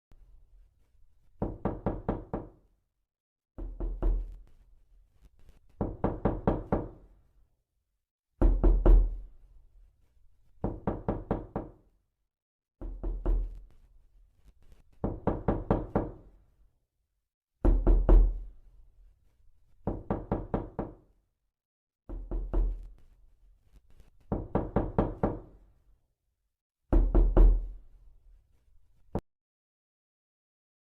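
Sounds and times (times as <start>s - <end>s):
knocking on a door: 1.4s - 2.6s, 3.6s - 4.4s, 5.8s - 7.0s, 8.4s - 9.2s, 10.6s - 11.8s, 12.8s - 13.6s, 15.0s - 16.3s, 17.6s - 18.4s, 19.8s - 21.1s, 22.1s - 22.8s, 24.3s - 25.5s, 26.9s - 27.7s
pounding on a door: 1.4s - 2.6s, 5.8s - 7.0s, 8.4s - 9.2s, 10.6s - 11.8s, 12.8s - 13.6s, 15.0s - 16.2s, 17.6s - 18.4s, 19.8s - 21.1s, 22.1s - 22.8s, 24.3s - 25.5s, 26.9s - 27.7s.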